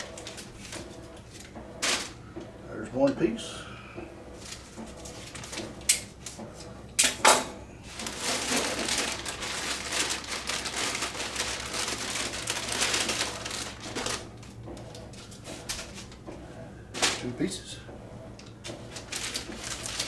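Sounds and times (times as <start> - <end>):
packaging crinkling and rustling: 0.0 - 2.2, 4.4 - 6.4, 7.8 - 16.3, 16.9 - 17.6, 18.4 - 20.0.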